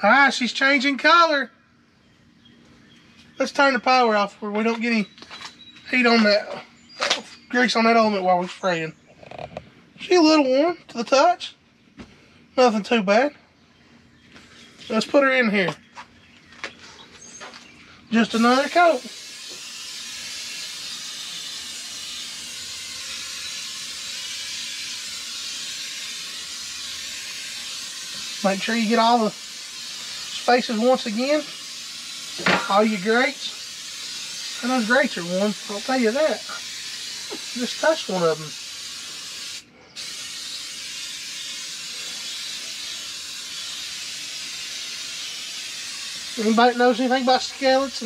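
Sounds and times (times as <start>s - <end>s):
oil spray hissing: 18.2s - 48.0s.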